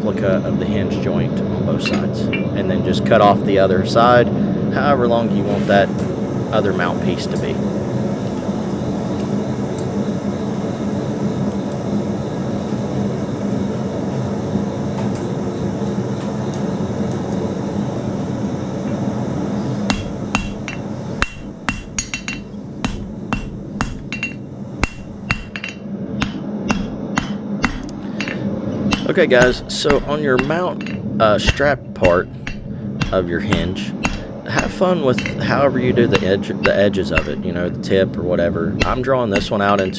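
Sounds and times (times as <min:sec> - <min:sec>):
forge running: 0:00.0 - 0:13.5, 0:14.6 - 0:39.9
hammer striking steel on anvil: 0:01.8 - 0:02.6, 0:19.9 - 0:37.8, 0:38.8 - 0:39.9.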